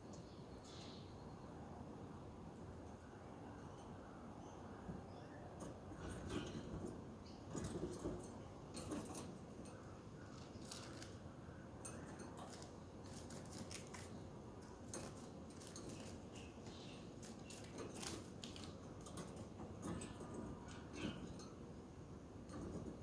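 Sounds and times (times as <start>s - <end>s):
low room noise: 0.0s - 23.0s
budgies clicking and ticking: 4.9s - 21.6s.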